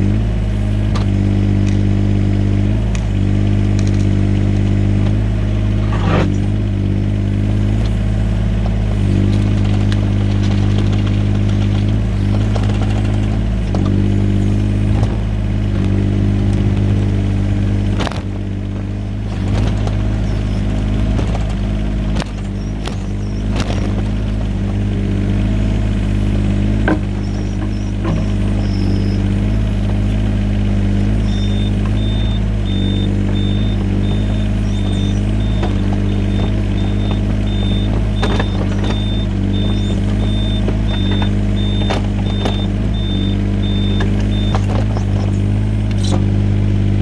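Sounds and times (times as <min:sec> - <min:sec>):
diesel engine running: 0:00.0 - 0:47.0
machine clanks and knocks: 0:31.1 - 0:46.3.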